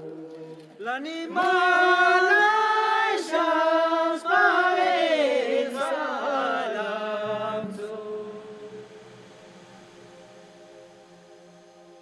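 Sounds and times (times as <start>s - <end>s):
solo voice chanting: 0.0s - 9.1s.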